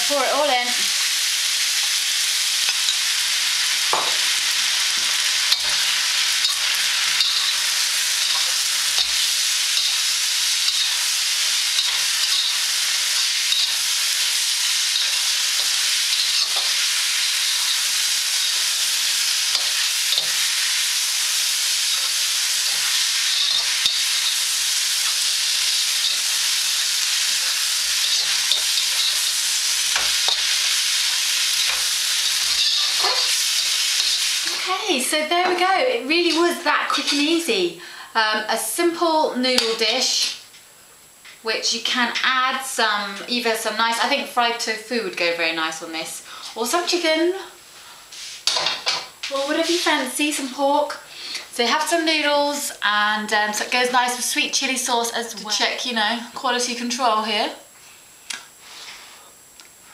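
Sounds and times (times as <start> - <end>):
food sizzling in a wok: 0.0 - 59.9
stirring clicks and scrapes: 8.2 - 18.8, 21.8 - 34.6.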